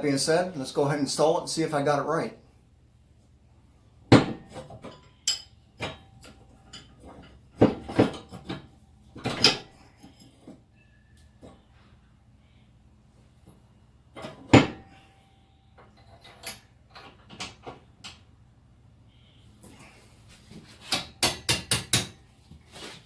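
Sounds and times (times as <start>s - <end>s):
metal clanks and knocks: 4.1s - 10.6s, 14.1s - 15.0s, 15.8s - 18.2s.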